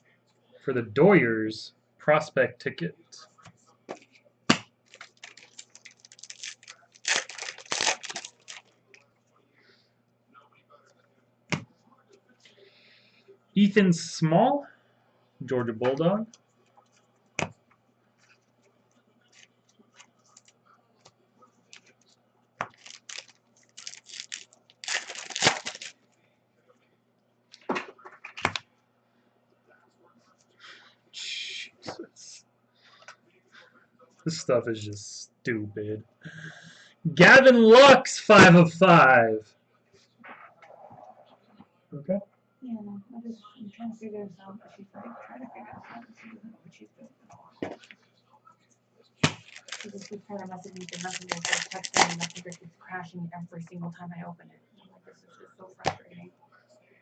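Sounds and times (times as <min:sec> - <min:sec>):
cards being handled: 0:03.9 - 0:08.7, 0:22.6 - 0:25.9, 0:49.2 - 0:52.6
wrapper crinkling and tearing: 0:04.8 - 0:08.8, 0:22.6 - 0:26.0, 0:49.2 - 0:52.6.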